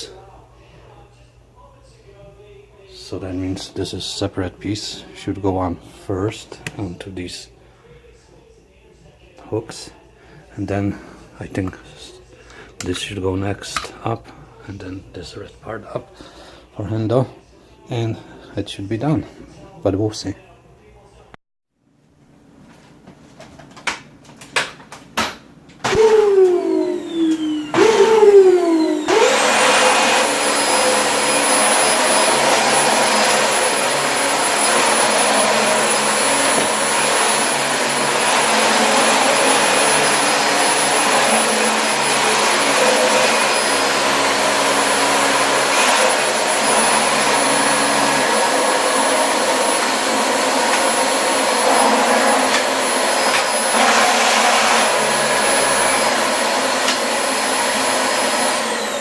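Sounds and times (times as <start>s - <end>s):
vacuum cleaner running: 25.8s - 59.0s.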